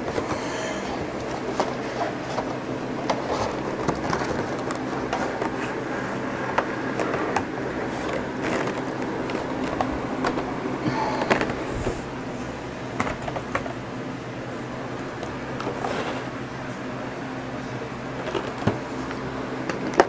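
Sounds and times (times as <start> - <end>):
cardboard and plastic rustling: 0.0 - 13.8, 14.6 - 16.5
steady low hum: 0.0 - 20.0.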